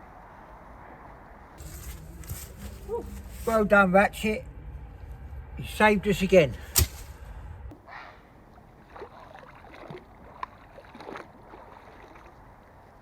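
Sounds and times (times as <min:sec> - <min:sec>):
water splashing and sloshing: 0:08.2 - 0:13.0.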